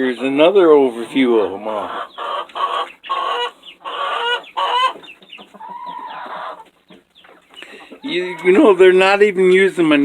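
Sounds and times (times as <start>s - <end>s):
hens clucking and calling: 0.0s - 8.9s.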